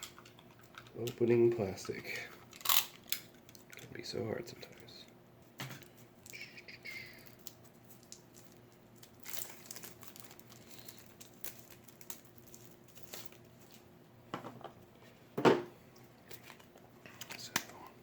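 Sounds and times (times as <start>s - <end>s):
plastic wrapping crinkling: 5.8s - 13.9s.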